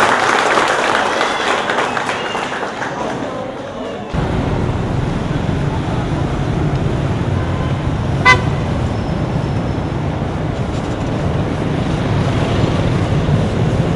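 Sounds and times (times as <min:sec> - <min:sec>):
road traffic: 0:02.2 - 0:13.9
vehicle horn toot: 0:07.3 - 0:09.1.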